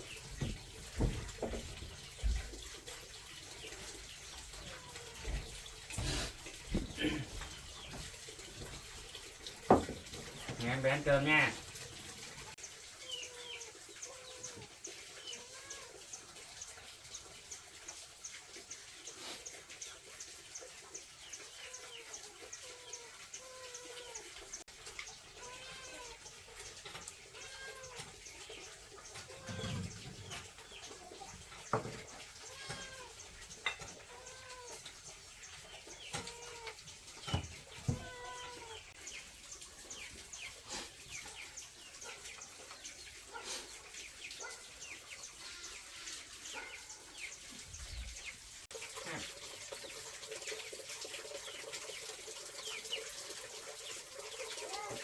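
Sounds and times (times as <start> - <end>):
sharp knocks: 9.7 - 10.0.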